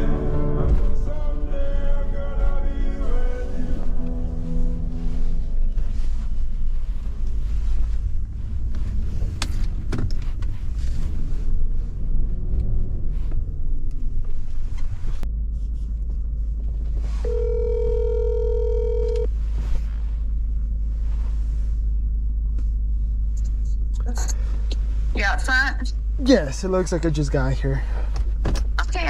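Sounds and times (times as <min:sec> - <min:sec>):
vehicle cabin rumble: 0:00.0 - 0:29.0
phone ringback tone: 0:17.2 - 0:19.3.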